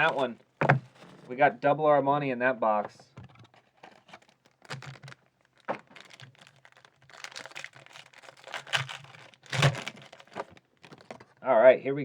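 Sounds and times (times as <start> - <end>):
packaging crinkling and tearing: 0.0 - 1.3, 3.2 - 11.4.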